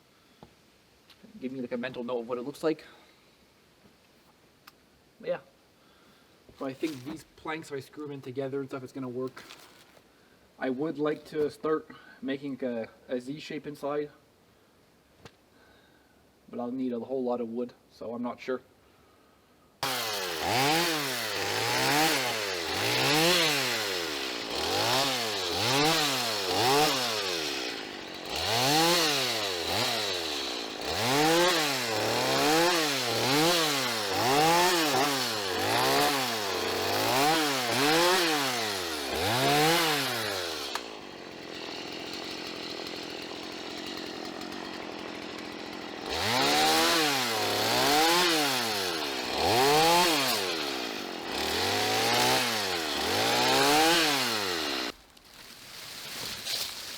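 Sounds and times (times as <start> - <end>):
chainsaw engine revving: 19.8 - 55.0.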